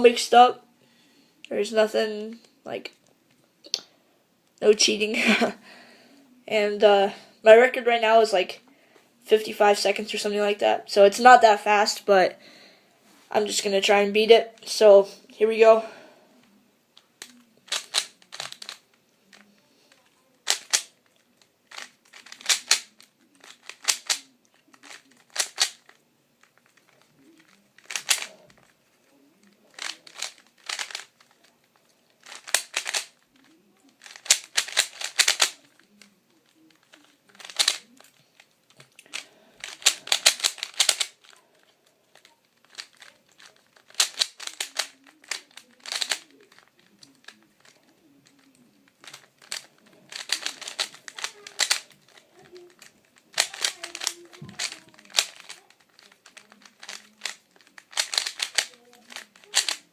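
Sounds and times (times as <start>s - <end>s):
speed cube clicking and rattling: 17.2s - 19.4s, 20.0s - 59.9s.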